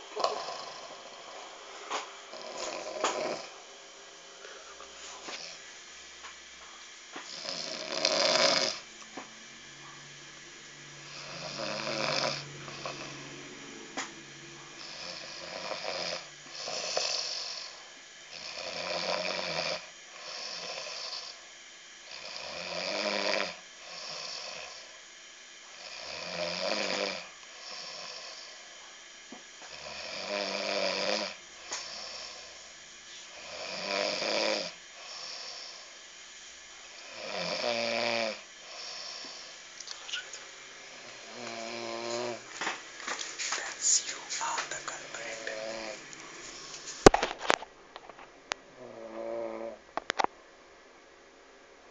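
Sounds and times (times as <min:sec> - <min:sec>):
person snoring: 0:00.0 - 0:01.6, 0:02.3 - 0:03.6, 0:07.3 - 0:08.8, 0:10.8 - 0:13.6, 0:14.4 - 0:21.4, 0:22.1 - 0:24.9, 0:25.8 - 0:28.6, 0:29.7 - 0:32.6, 0:33.2 - 0:35.9, 0:37.0 - 0:39.6, 0:41.0 - 0:42.4, 0:43.4 - 0:47.1.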